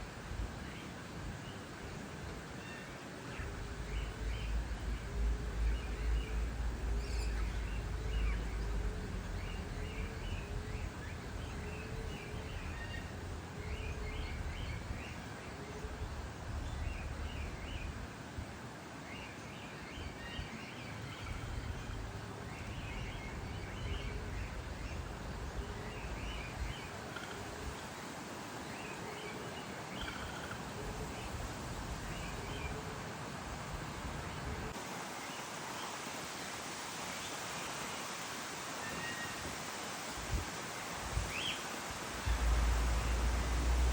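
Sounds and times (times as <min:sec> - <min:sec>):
steady low rumble: 0:03.4 - 0:15.1, 0:42.2 - 0:43.9.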